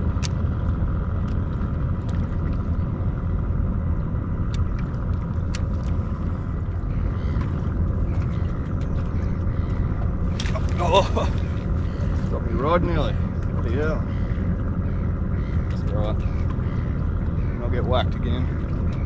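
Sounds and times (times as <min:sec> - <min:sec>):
boat engine rumble: 0:00.0 - 0:19.0.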